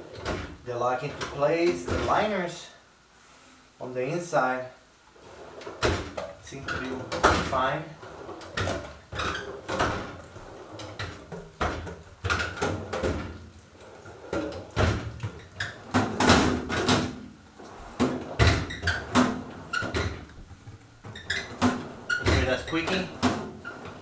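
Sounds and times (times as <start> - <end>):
steel drawers sliding: 5.2 - 24.0.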